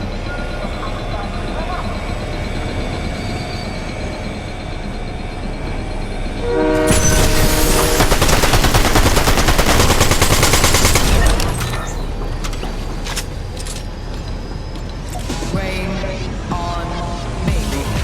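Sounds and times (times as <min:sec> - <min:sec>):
train horn chord: 0:06.4 - 0:08.0.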